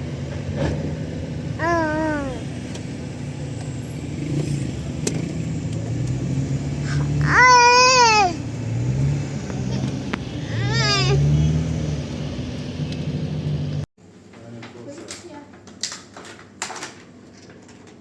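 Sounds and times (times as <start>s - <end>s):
wavering vocal calls: 1.6s - 2.5s, 6.9s - 8.4s, 10.5s - 11.2s.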